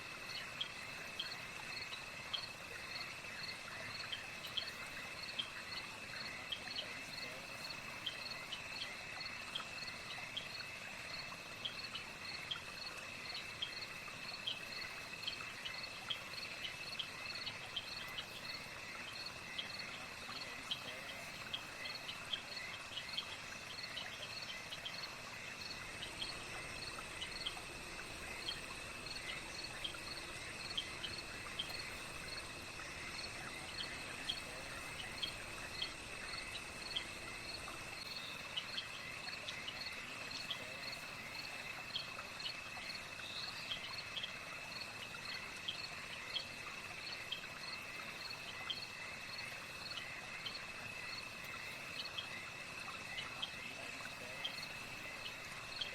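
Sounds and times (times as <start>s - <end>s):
crickets trilling and chirping: 0.0s - 55.9s.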